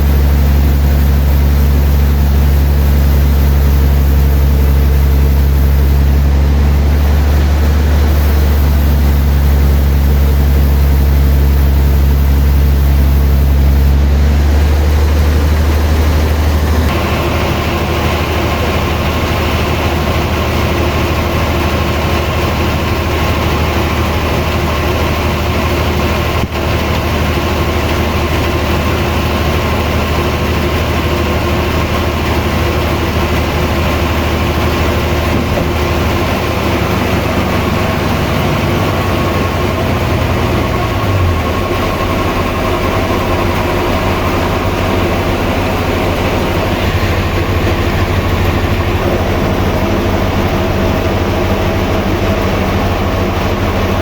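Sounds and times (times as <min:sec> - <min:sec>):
high-pitched broad noise: 0:00.0 - 0:15.2
sawmill machinery humming: 0:00.0 - 0:54.0.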